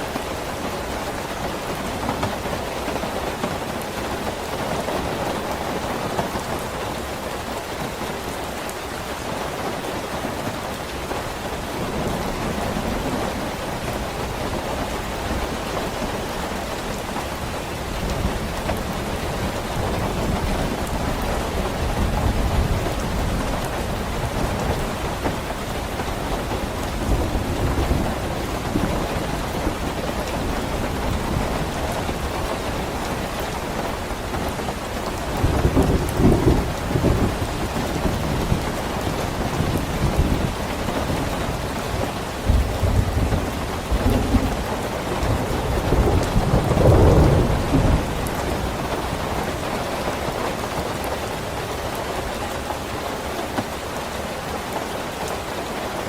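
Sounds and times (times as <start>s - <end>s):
steady rain: 0.0s - 56.0s
low rolling thunder: 17.8s - 49.6s.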